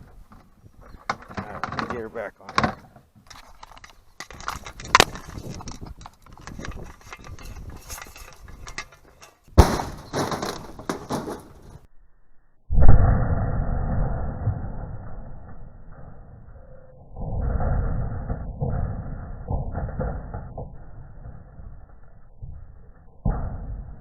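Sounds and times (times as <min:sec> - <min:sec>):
metal clanks and knocks: 0:00.0 - 0:11.9.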